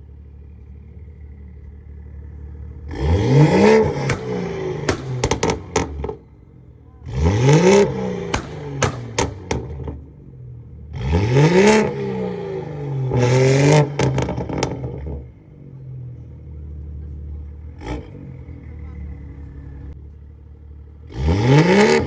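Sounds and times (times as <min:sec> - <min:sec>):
car engine idling and revving: 0:00.0 - 0:22.0
exhaust cracks: 0:02.9 - 0:06.5, 0:07.1 - 0:10.2.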